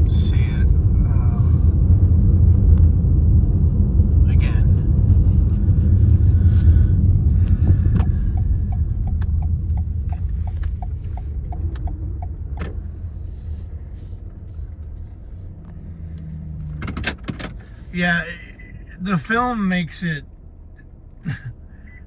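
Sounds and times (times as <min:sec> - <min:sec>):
car engine and tyre rumble: 0:00.0 - 0:22.0
turn signal ticking: 0:04.8 - 0:17.7.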